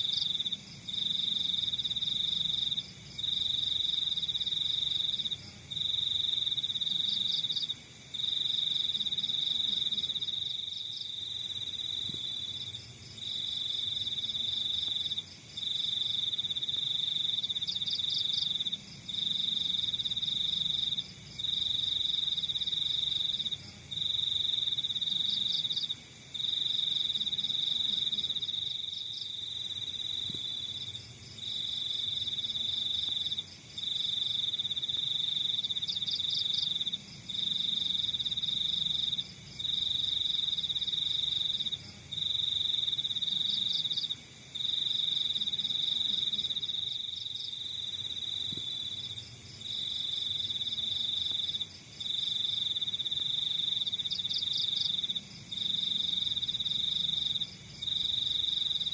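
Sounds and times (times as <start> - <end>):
crickets trilling: 0.0 - 58.9.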